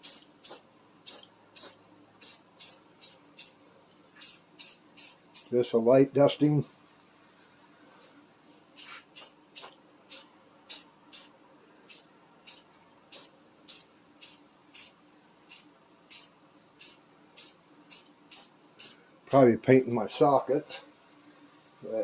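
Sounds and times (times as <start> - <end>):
spray can hissing in bursts: 0.0 - 3.6, 4.2 - 5.5, 8.8 - 11.3, 11.9 - 19.0.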